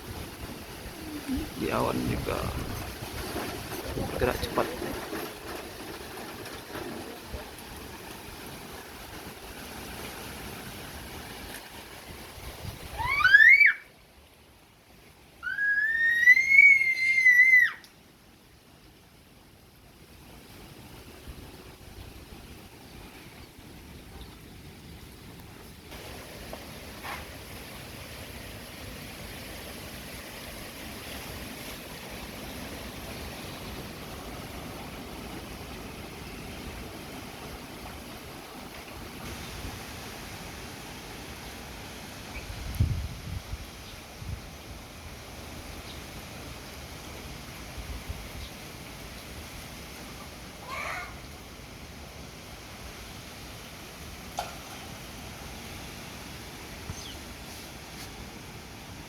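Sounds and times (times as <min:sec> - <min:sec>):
wind buffeting microphone: 0:00.0 - 0:13.2, 0:42.3 - 0:44.6.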